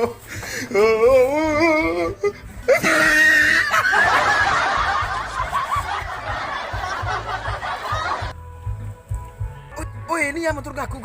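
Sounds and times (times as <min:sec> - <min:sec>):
person laughing: 0:02.2 - 0:08.3.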